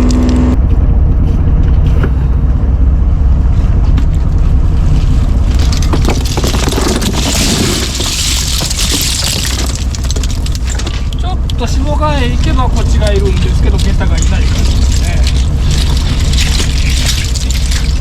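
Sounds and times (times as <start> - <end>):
boat engine running: 0.0 - 18.0
water rushing: 5.6 - 18.0.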